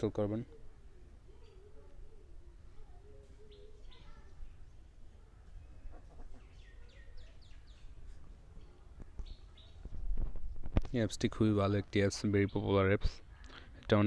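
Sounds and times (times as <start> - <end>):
faint bird chirping: 0.0 - 11.1.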